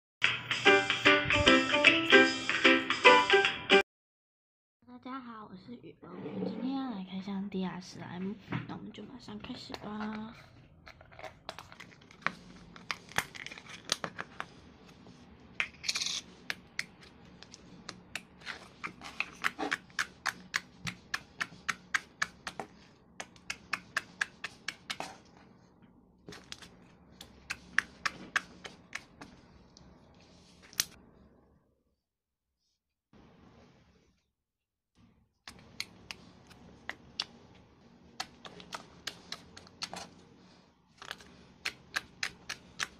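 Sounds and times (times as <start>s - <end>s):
packaging tearing: 11.2s - 14.2s
packaging crackling and clicking: 41.0s - 42.9s.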